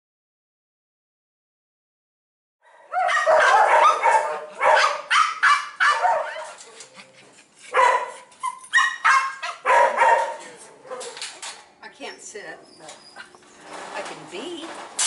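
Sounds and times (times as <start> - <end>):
dogs barking and yipping: 2.7 - 13.8.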